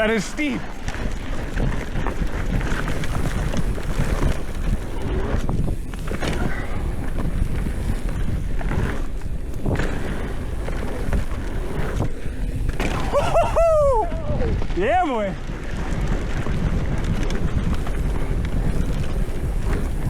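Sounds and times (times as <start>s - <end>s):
bike tyre and frame rattle: 0.0s - 20.0s
wind on microphone: 0.0s - 20.0s
rider yelling: 12.9s - 15.3s.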